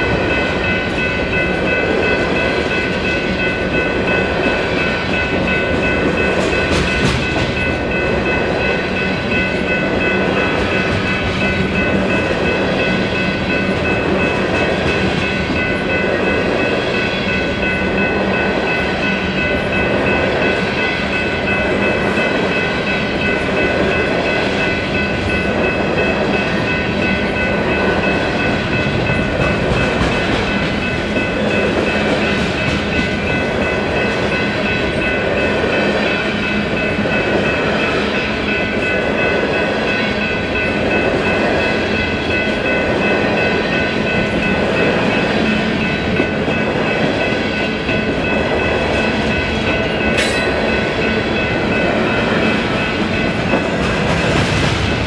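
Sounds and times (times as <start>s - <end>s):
train wheels rumbling on rail: 0.0s - 55.0s
high ringing: 46.9s - 53.7s.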